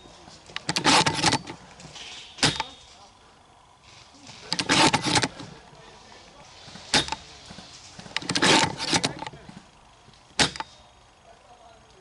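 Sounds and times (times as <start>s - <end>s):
clicks and rustling: 0.2s - 3.0s, 4.0s - 5.6s, 6.7s - 10.8s.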